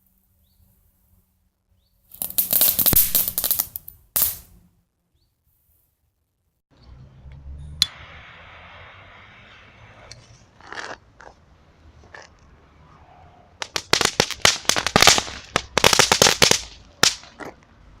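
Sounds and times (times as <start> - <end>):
firework crackling pops: 2.1 - 4.5, 13.6 - 17.4.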